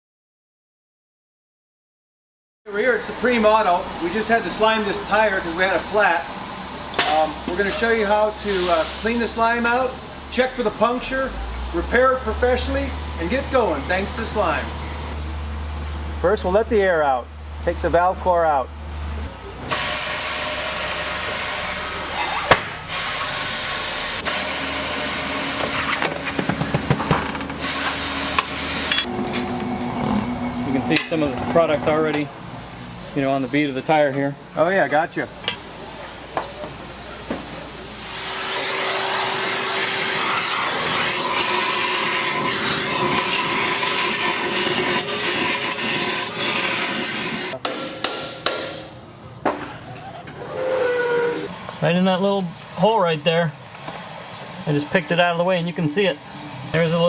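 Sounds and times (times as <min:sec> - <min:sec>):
air hissing out of tire: 0:19.7 - 0:29.1
sharp knocks: 0:47.6 - 0:49.6.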